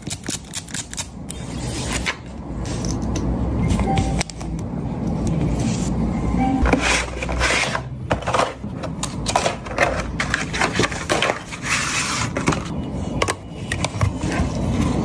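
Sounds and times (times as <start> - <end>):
packaging rustling and scraping: 6.6 - 12.8.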